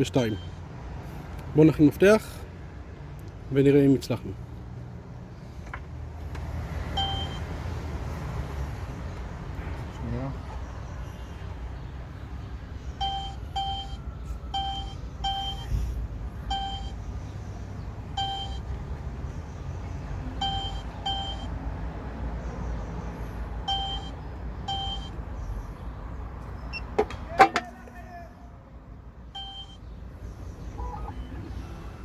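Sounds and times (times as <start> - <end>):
electronic keypad beeps: 7.0 - 7.4, 13.0 - 14.0, 14.6 - 15.7, 16.5 - 17.0, 18.2 - 18.6, 20.4 - 21.5, 23.7 - 25.2, 29.4 - 29.8.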